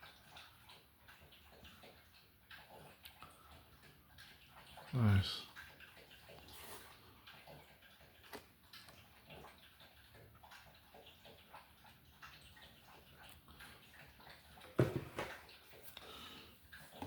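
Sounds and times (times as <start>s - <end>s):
thump: 14.8s - 15.4s.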